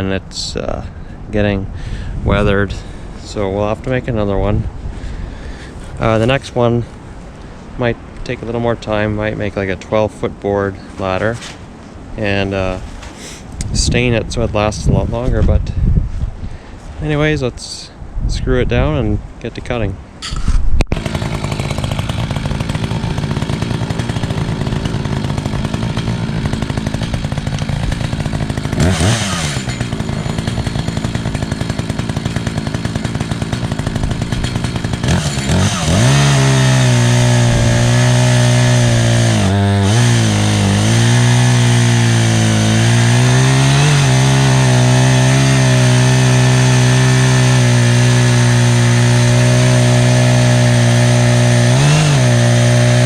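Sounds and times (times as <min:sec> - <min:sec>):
chainsaw engine revving: 0:20.2 - 0:53.0.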